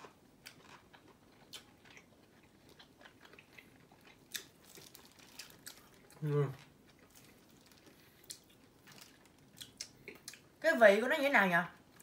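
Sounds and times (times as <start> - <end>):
chewing with wet mouth clicks: 0.4 - 6.2, 6.9 - 10.5.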